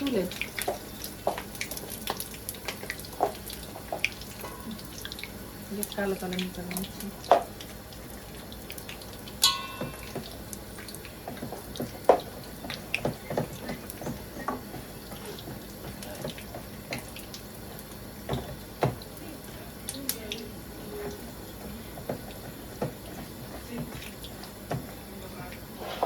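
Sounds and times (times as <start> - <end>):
batter sizzling in hot oil: 0.0 - 26.0
metal utensil clinking on pan: 9.4 - 10.3.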